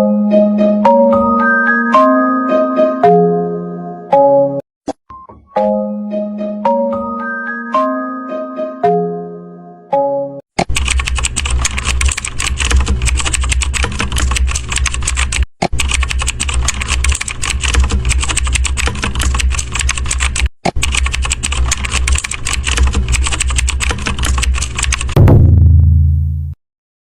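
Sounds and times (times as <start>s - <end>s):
fast typing on a keyboard: 10.6s - 25.2s
low rumble: 25.2s - 26.6s.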